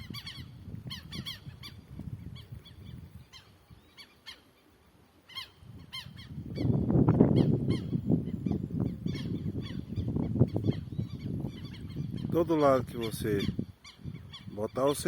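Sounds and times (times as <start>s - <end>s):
lapwings calling: 0.0s - 15.0s.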